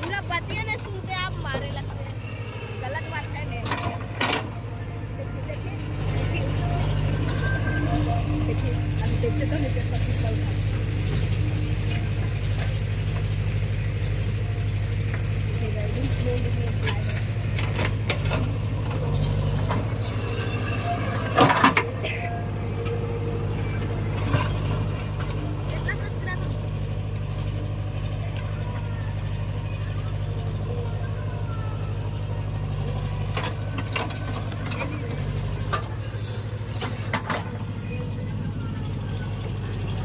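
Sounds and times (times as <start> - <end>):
heavy diesel engine running: 0.0 - 40.0
metallic clanks and rattles: 3.5 - 4.7, 5.4 - 23.0, 32.6 - 40.0
metallic clanks and knocks: 3.6 - 4.6, 16.1 - 23.0, 33.1 - 36.0.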